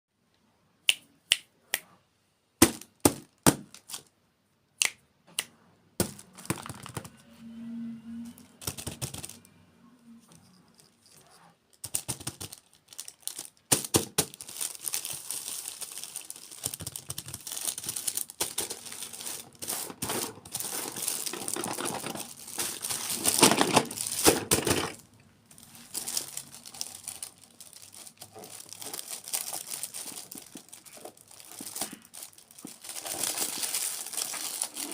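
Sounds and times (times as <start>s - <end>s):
packaging crinkling and tearing: 11.8s - 34.9s.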